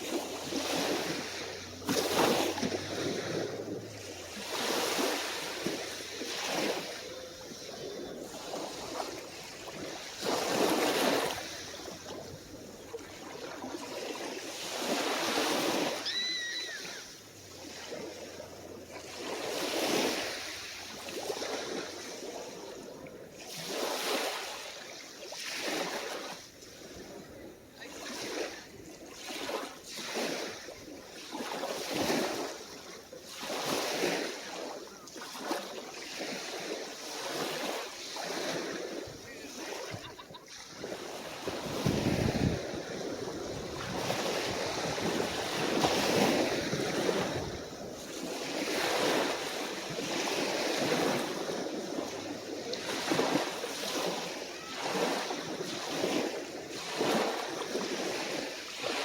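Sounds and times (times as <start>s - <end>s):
wind buffeting microphone: 0.0s - 16.0s, 38.2s - 53.4s
small waves lapping on beach: 0.0s - 59.0s.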